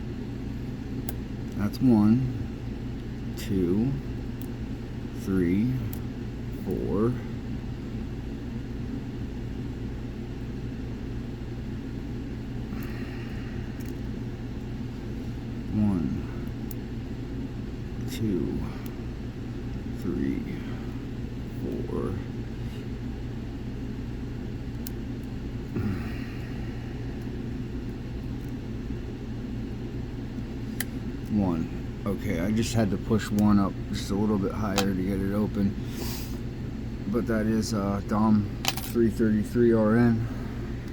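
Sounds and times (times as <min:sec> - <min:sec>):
low background rumble: 0:00.0 - 0:40.9
low mechanical hum: 0:00.0 - 0:40.9.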